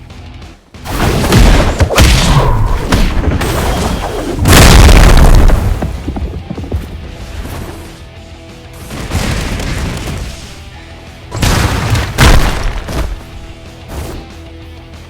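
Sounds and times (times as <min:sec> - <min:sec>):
music: 0:00.0 - 0:15.0
loud booms: 0:00.9 - 0:05.8.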